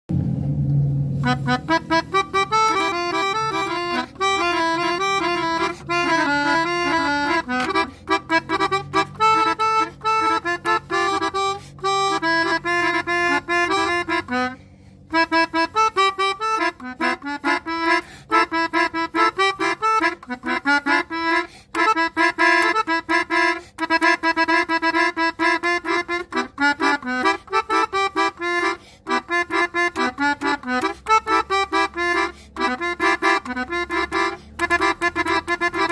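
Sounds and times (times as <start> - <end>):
bus air horn tooting a melody: 1.2 - 18.6.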